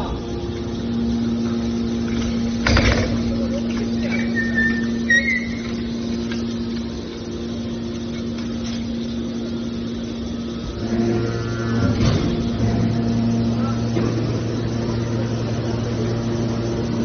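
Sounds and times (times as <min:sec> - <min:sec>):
baler machine humming: 0:00.0 - 0:17.0
high metallic squeaks: 0:04.0 - 0:05.9.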